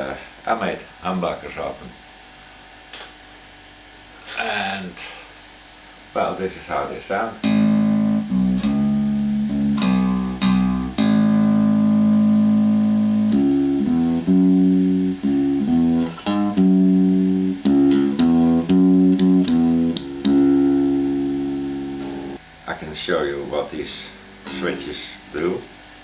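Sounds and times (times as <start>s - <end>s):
electric bass plucked notes: 7.4s - 22.4s, 23.8s - 25.6s.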